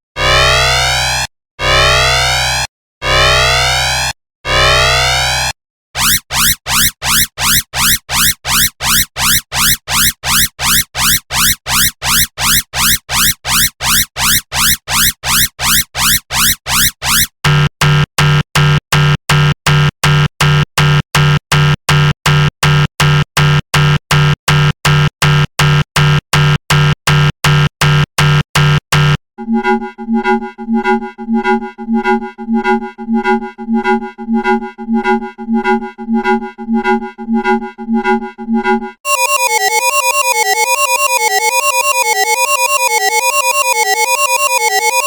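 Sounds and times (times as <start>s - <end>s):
pulsing alarm of rising chirps: 4.6s - 17.3s, 39.1s - 45.0s
electronic alarm beeps: 4.7s - 17.3s, 39.1s - 45.0s.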